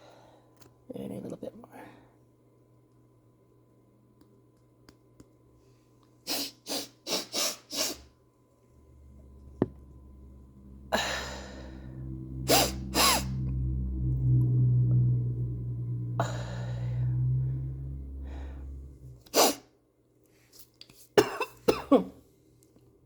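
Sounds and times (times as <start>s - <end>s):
sharp sniffs through nose: 6.2s - 8.1s
low steady hum: 8.1s - 19.5s.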